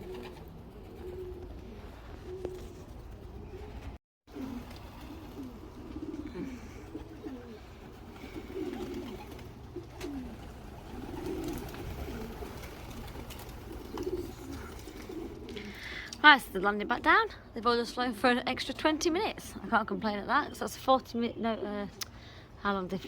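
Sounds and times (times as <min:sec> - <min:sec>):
pigeons cooing: 0:00.0 - 0:16.2.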